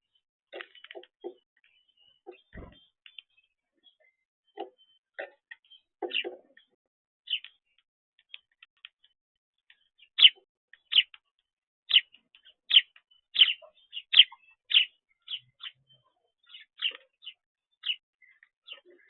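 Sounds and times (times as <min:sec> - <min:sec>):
small bird chirping: 0:00.0 - 0:19.0.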